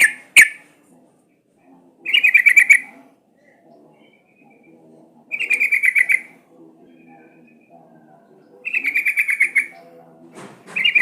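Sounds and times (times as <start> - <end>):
bird singing bubbly phrases: 2.0 - 10.0.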